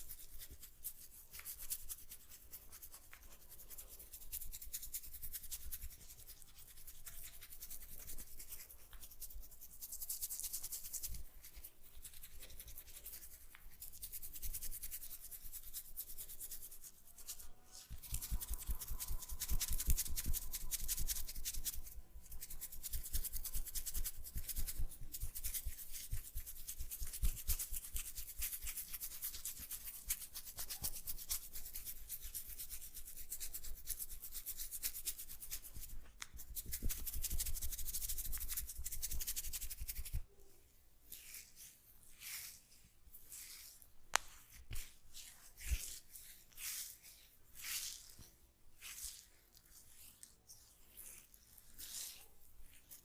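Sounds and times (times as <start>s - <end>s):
hands rubbing oiled hair: 0.0s - 40.3s, 41.0s - 53.0s.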